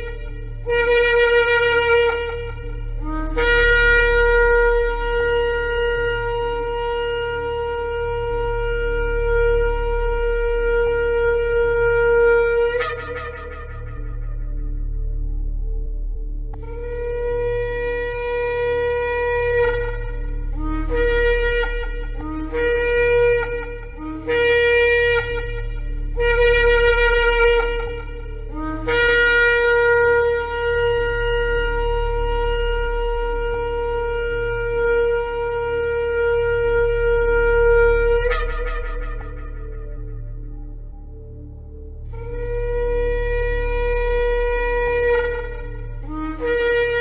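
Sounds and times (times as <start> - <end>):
shofar blasts: 0.0 - 47.0
steady low hum: 0.0 - 47.0.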